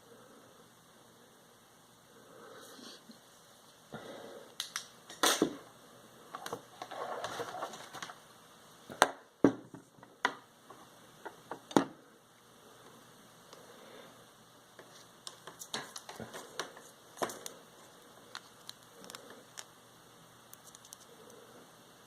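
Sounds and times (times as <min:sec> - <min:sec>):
rustling: 0:06.6 - 0:08.2.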